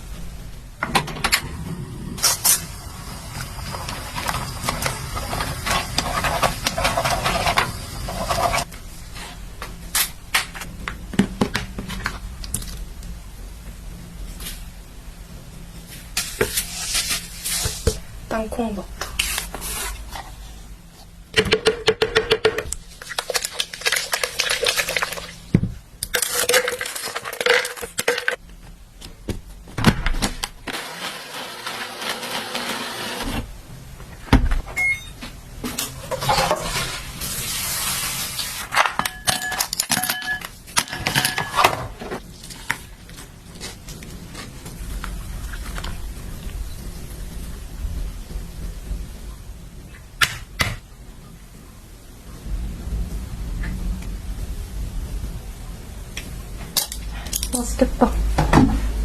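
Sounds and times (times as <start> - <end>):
steady hiss: 36.7 - 38.8
utensils and dishes clinking: 38.8 - 42.2.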